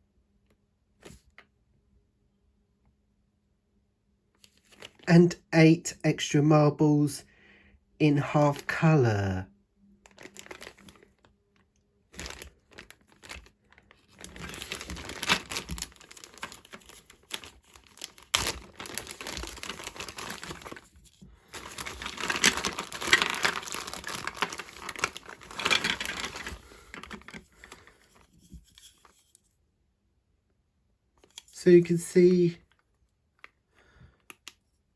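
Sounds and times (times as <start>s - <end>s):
plastic packaging crinkling: 10.1s - 11.3s, 12.1s - 28.4s.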